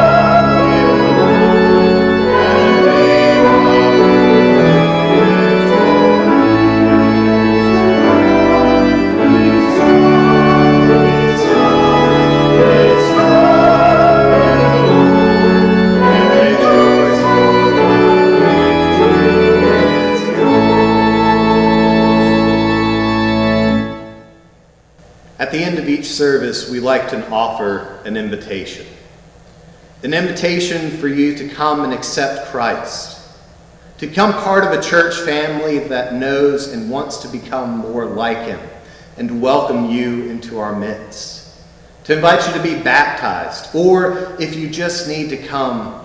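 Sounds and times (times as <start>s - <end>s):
church organ chords: 0.0s - 27.9s.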